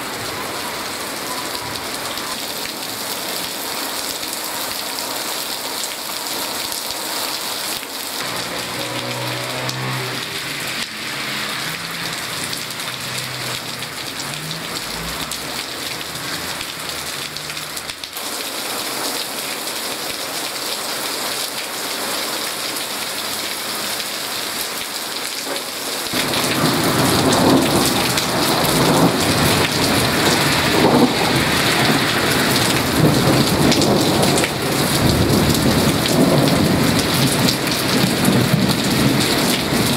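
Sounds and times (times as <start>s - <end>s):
heavy rain falling: 0.0s - 39.9s
thunder rumbling: 26.2s - 39.9s.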